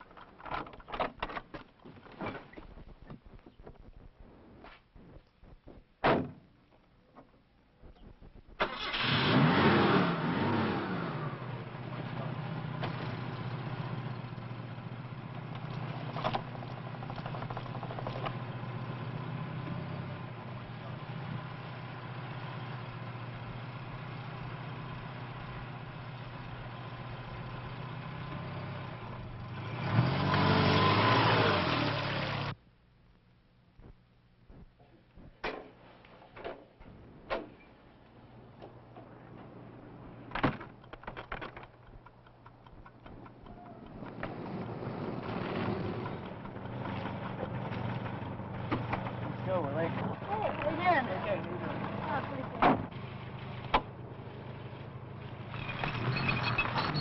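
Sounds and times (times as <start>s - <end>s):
car engine starting and idling: 8.6s - 32.6s, 37.2s - 57.0s.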